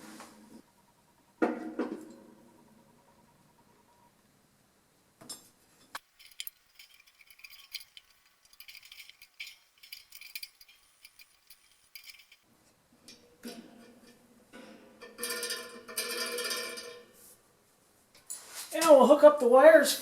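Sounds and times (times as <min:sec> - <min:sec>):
metallic clicks and rattles: 0:06.0 - 0:12.5.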